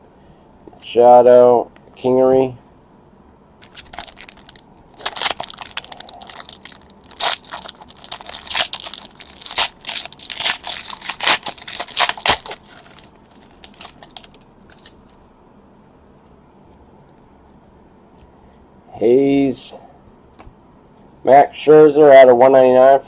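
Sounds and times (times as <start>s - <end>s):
wrapper tearing and crinkling: 3.6s - 15.2s.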